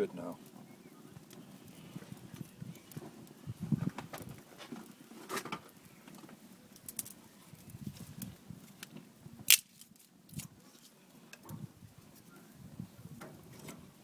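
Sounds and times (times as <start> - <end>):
wood fire crackling: 0.0 - 12.2.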